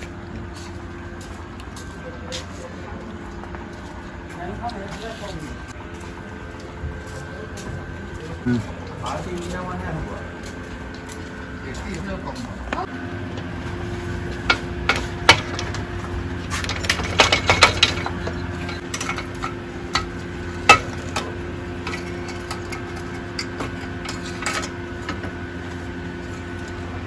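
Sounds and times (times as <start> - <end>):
steady background hum: 0.0 - 27.0
metal tools clinking: 16.5 - 25.2.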